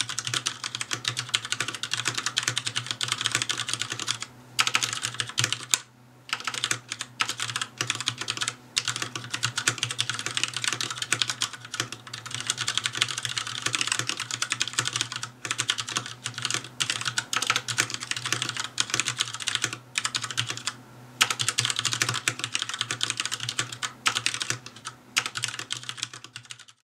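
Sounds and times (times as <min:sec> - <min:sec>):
mechanical keyboard typing: 0:00.0 - 0:26.8.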